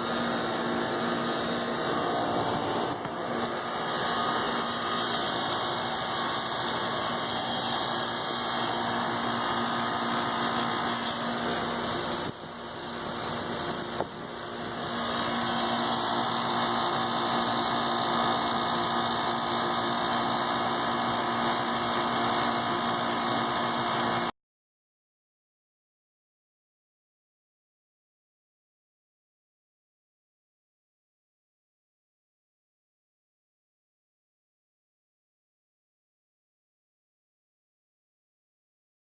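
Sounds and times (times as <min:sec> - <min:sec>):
vacuum pump running: 0:00.0 - 0:24.3.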